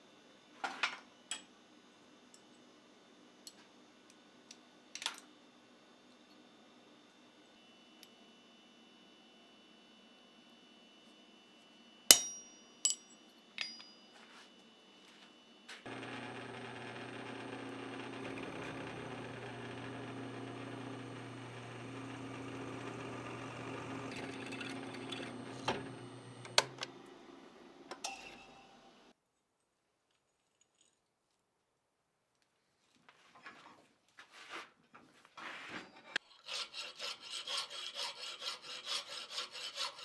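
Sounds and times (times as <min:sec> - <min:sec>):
ringing metal-on-metal strikes: 0:12.1 - 0:14.1
electric power tool running: 0:15.9 - 0:29.1.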